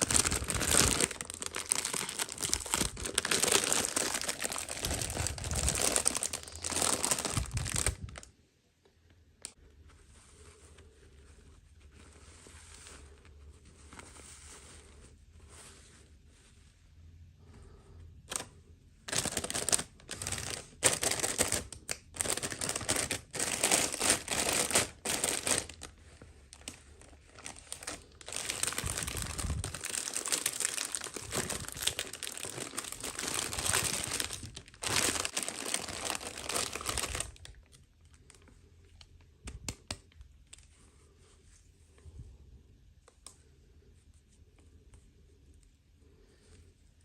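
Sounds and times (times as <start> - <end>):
toy packaging crinkling and tearing: 0.0 - 8.3, 18.3 - 38.4.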